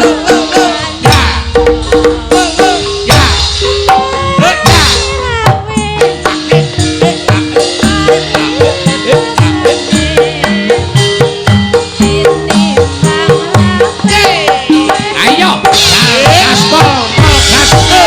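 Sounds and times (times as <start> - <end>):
ringing metallophone notes: 6.0 - 18.0.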